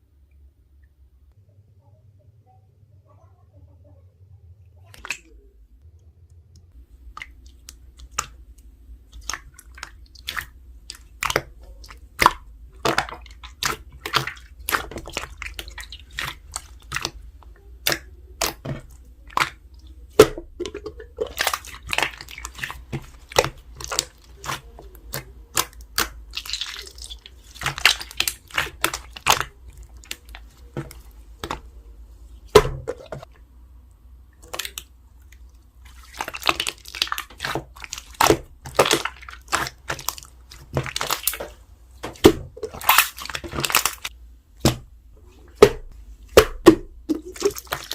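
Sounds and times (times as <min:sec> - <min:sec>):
slime squishing sticky pops: 0:07.1 - 0:31.7, 0:36.0 - 0:44.9, 0:45.6 - 0:47.9.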